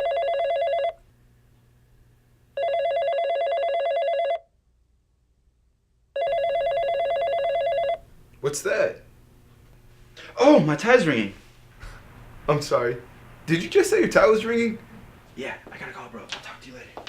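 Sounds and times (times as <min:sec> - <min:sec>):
telephone ringing: 0:00.0 - 0:01.0, 0:02.6 - 0:04.5, 0:06.2 - 0:08.0.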